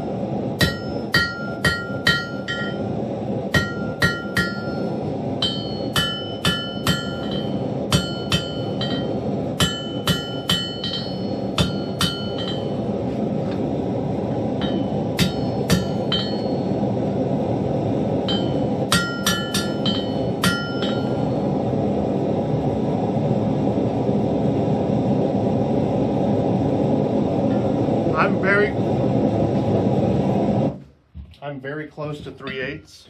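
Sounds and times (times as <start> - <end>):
hammer ringing on anvil: 0.6 - 2.8, 3.5 - 12.8, 14.6 - 16.7, 18.3 - 21.3.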